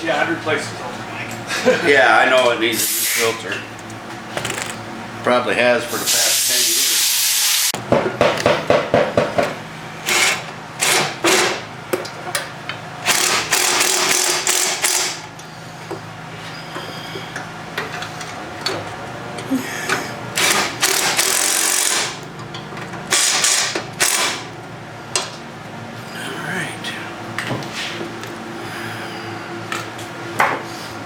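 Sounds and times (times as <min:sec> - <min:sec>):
socket ratchet clicking: 0:20.4 - 0:22.2.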